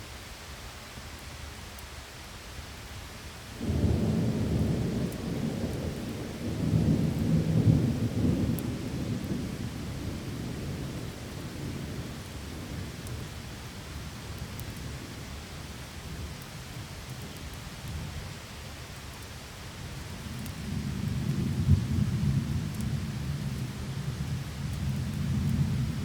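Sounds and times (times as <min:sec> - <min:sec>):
steady rain: 0:00.0 - 0:26.0
thunder rumbling: 0:03.6 - 0:13.0.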